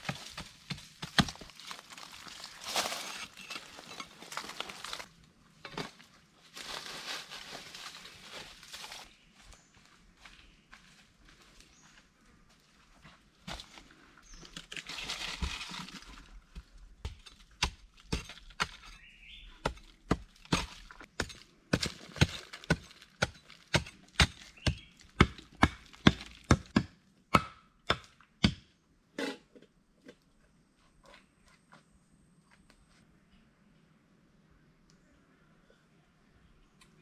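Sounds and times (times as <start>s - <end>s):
rustle: 0.0s - 12.8s
chopping strikes on wood: 19.6s - 28.7s.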